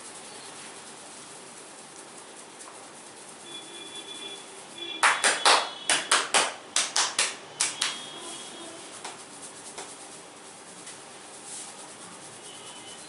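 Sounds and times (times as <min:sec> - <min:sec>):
hands slapping head: 0:05.0 - 0:08.0, 0:09.0 - 0:10.0.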